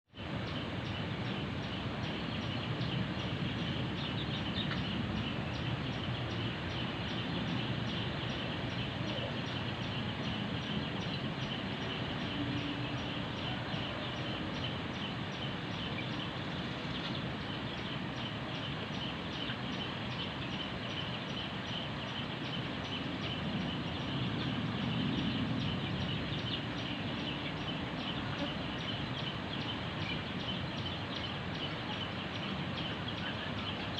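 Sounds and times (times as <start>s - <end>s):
sparrows chirping: 0.2s - 33.9s.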